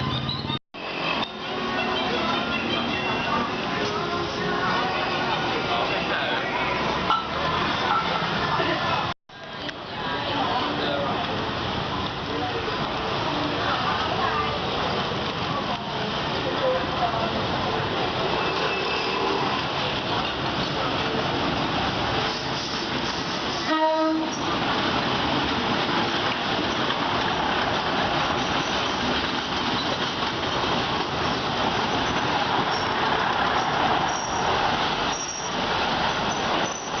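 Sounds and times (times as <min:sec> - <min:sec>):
train rumbling on rails: 0:00.0 - 0:37.0
train horn blast: 0:23.6 - 0:24.4.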